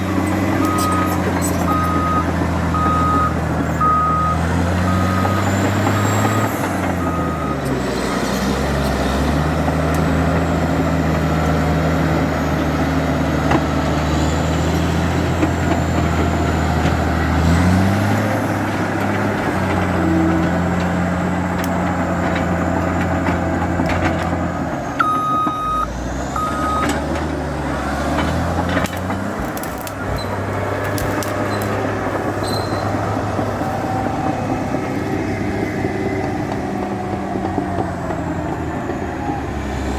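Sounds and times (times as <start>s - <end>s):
bulldozer diesel engine under load: 0.0s - 39.9s
reversing alarm beeps: 0.6s - 7.6s, 25.0s - 27.0s.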